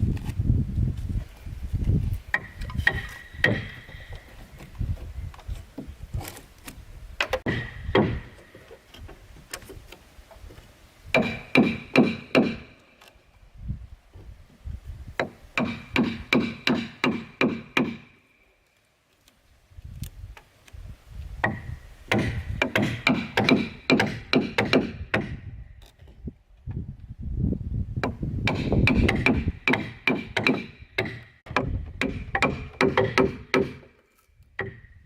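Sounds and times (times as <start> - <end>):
hand tool chopping wood: 2.3 - 4.2, 7.2 - 8.8, 11.2 - 12.7, 21.4 - 25.4, 28.5 - 34.0.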